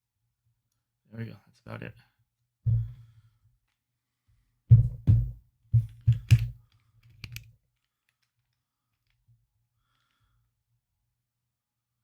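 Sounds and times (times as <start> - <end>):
tripod knocking on desk: 4.7 - 6.5.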